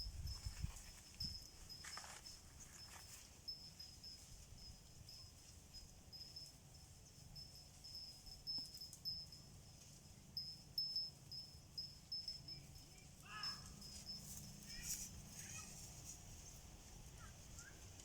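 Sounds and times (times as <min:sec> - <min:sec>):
insects trilling: 0:10.4 - 0:16.0.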